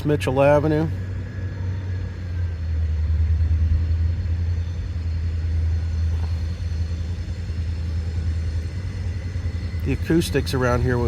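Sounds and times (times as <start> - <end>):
low engine rumble: 0.0 - 11.0.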